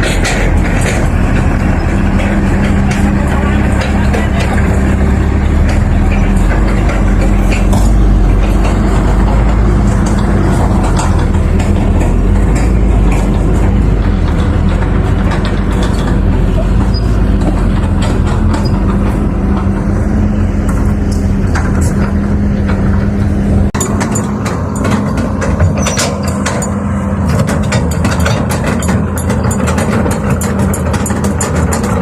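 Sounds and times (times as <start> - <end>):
heavy diesel machinery running: 0.0 - 32.0
metallic clanks and knocks: 0.0 - 32.0.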